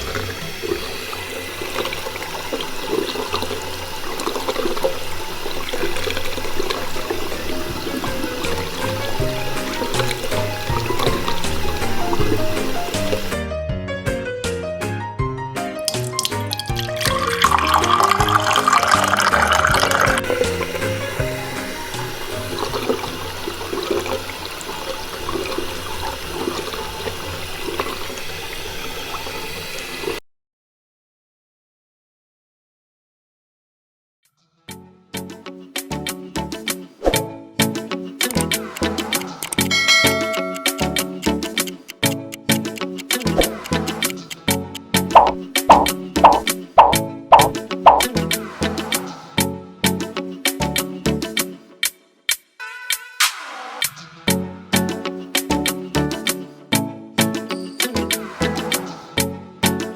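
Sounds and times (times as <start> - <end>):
water gurgling: 0.0 - 13.4, 15.9 - 30.2, 43.3 - 48.2
water pouring and splashing: 0.0 - 13.4, 15.9 - 30.2, 43.1 - 44.4, 45.1 - 48.2.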